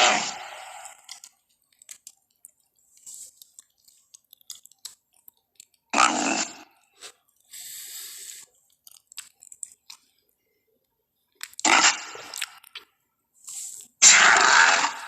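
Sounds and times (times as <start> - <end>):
creature grunting burst: 0.0 - 0.9
creature breathy hiss: 7.6 - 8.4.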